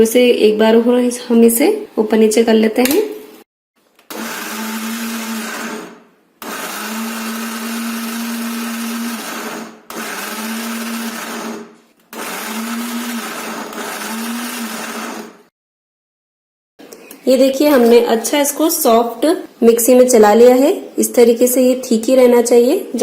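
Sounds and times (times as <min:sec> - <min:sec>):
mixer grinder running in bursts: 0:04.1 - 0:15.5.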